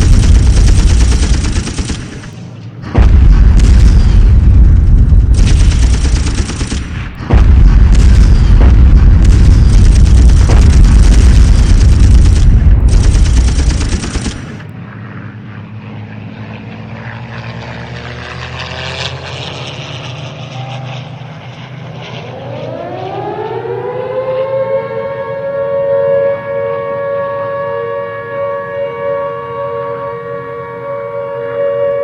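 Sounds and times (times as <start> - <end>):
bomb explosions rumbling: 0.0 - 14.7
crackle: 0.0 - 14.7
low steady drone: 0.0 - 32.0
air-raid siren wailing: 7.3 - 32.0.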